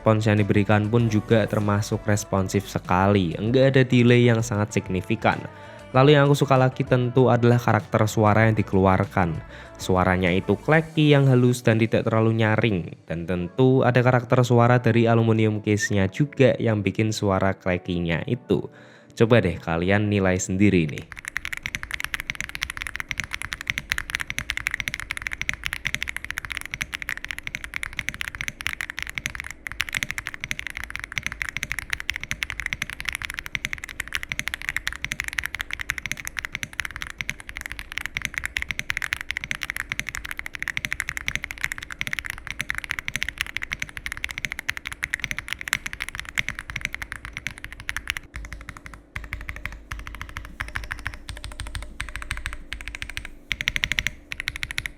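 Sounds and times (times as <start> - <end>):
mechanical keyboard typing: 20.8 - 54.9.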